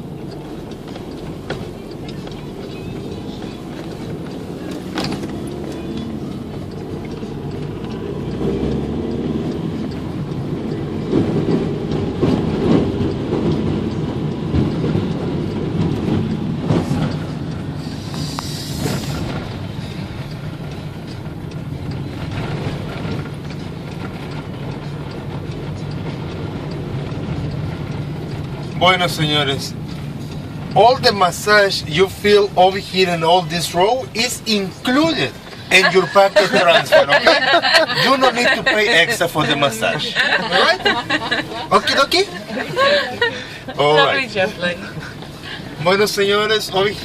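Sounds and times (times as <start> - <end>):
bus engine and road noise: 0.0 - 47.0
brief hiss: 17.8 - 19.3.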